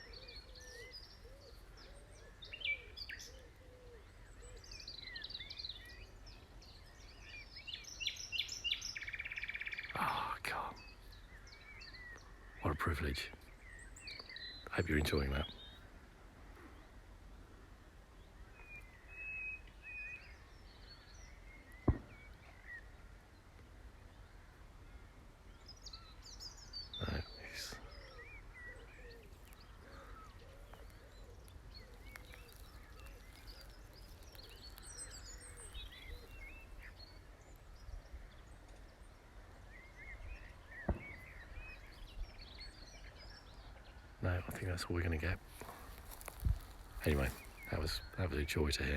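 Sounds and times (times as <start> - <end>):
nightingale singing: 0.0 - 15.9, 25.5 - 48.9.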